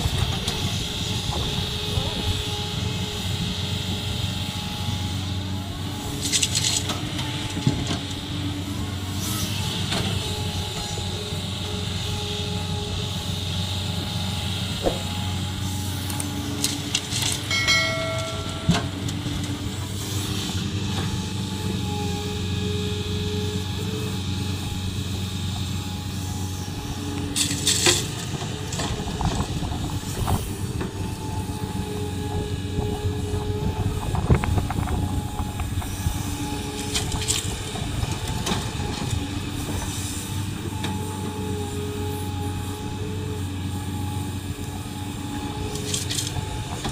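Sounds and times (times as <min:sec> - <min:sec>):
engine whine: 0:00.0 - 0:46.9
excavator diesel engine running: 0:00.0 - 0:46.9
metal knocks and clanks: 0:17.3 - 0:19.6.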